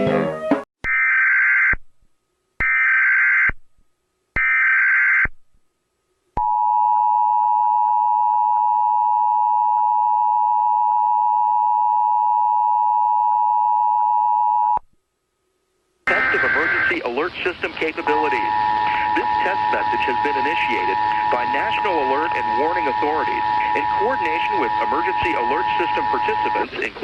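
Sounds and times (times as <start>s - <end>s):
two-tone attention signal: 16.1s - 17.2s, 17.8s - 27.0s
digital header tone bursts: 16.1s - 27.0s.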